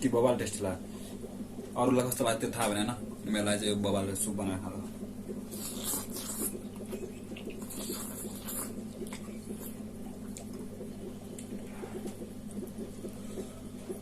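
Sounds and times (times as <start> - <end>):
short slurps: 5.3 - 14.0
person chewing noodles: 5.4 - 14.0.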